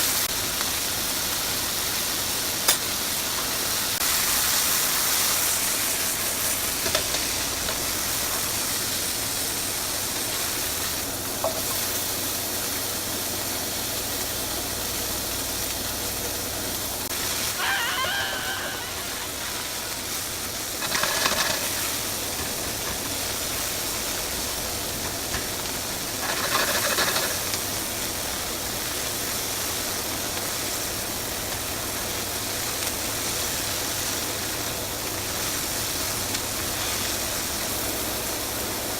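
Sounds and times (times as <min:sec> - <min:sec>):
food sizzling in a frying pan: 0:00.0 - 0:38.9
cookware clattering: 0:20.8 - 0:23.1.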